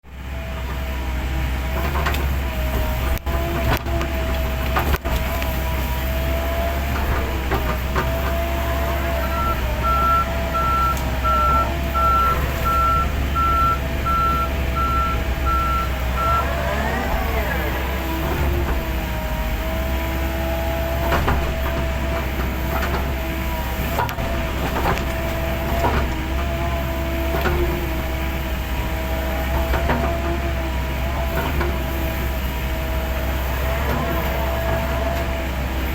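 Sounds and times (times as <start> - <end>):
heavy machine engine rumbling: 0.1 - 35.9
warning beeps: 9.1 - 16.7.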